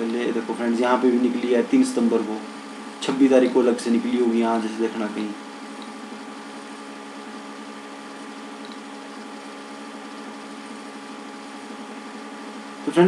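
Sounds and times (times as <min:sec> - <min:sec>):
steady background hum: 0:00.0 - 0:13.0
held tones: 0:03.9 - 0:12.8.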